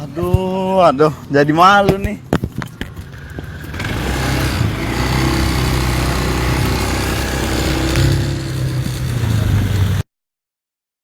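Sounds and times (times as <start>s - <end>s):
street noise: 0.0s - 10.0s
motorcycle engine running: 3.0s - 10.0s.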